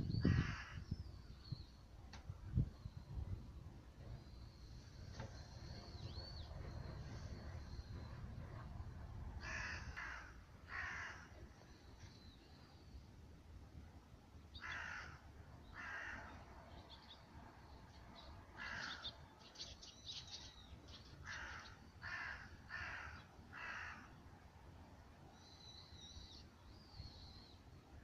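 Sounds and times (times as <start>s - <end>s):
distant crows cawing: 0.2s - 0.9s, 9.4s - 11.6s, 14.6s - 16.5s, 18.5s - 19.2s, 21.2s - 24.3s
small birds chirping: 15.6s - 21.9s.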